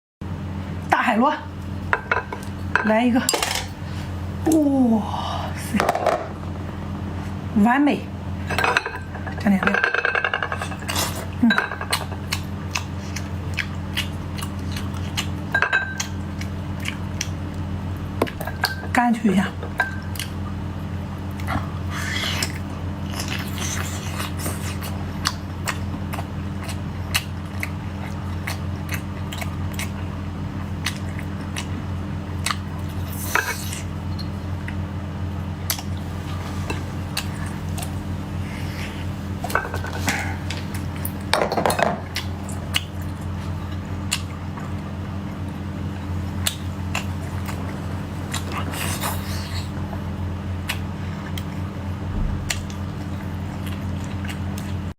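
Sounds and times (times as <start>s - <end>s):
low hum: 51.0s - 54.2s.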